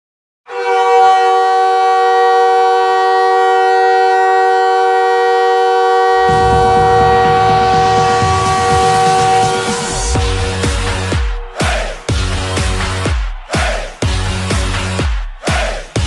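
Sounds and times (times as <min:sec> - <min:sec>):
goal horn blasting: 0:00.5 - 0:12.3
low noise: 0:06.2 - 0:11.4.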